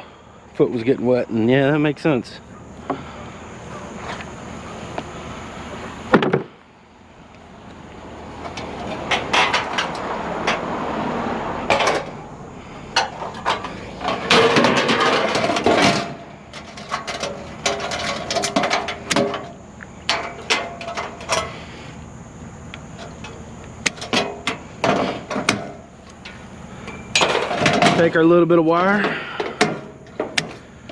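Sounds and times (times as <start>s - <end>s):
rattling clatter of metal: 8.3s - 10.7s, 11.6s - 21.8s, 22.9s - 30.9s
scrap metal clanking: 8.4s - 10.8s, 11.6s - 21.9s, 22.8s - 30.9s.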